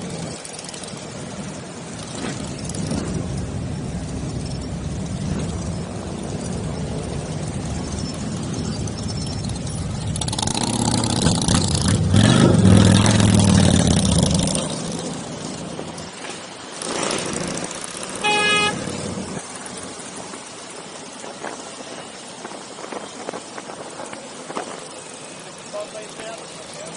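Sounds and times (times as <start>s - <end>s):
motorcycle engines running: 0.0s - 26.9s
horn toot: 18.2s - 19.1s.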